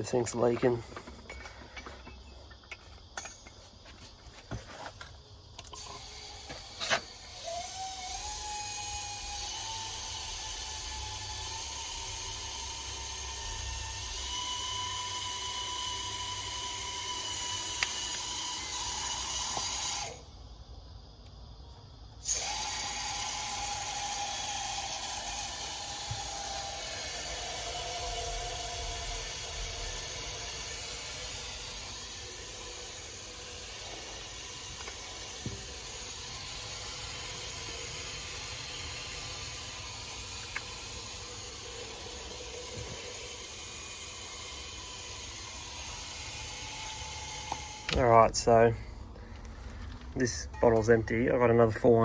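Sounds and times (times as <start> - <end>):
gas hissing from a bottle: 5.5 - 20.3, 22.2 - 48.1.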